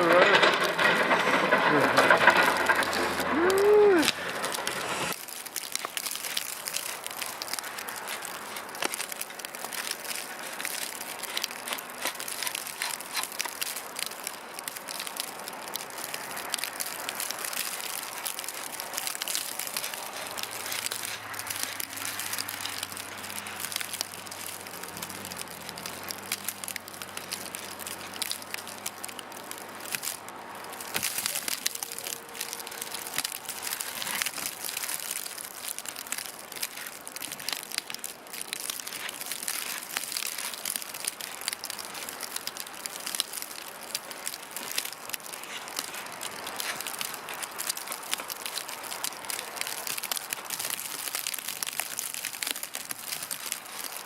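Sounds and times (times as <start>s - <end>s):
steady gritty hiss: 0.0s - 54.0s
snow crunching underfoot: 15.4s - 54.0s.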